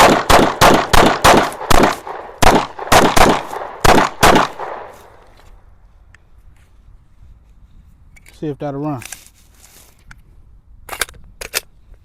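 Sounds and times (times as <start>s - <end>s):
pistol shots: 0.0s - 4.9s.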